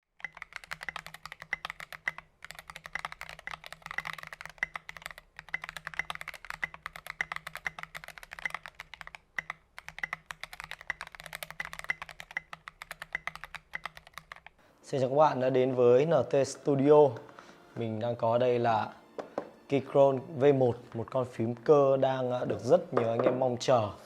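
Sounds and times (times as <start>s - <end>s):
fast mechanical keyboard typing: 0.2s - 14.6s.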